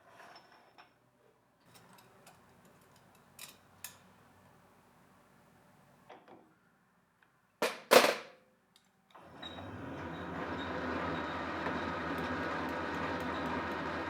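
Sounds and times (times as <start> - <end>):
metal lathe running: 9.4 - 14.0.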